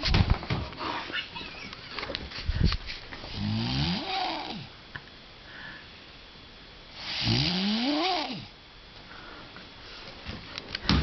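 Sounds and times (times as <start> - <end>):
woman snoring: 3.3 - 4.7, 7.0 - 8.5.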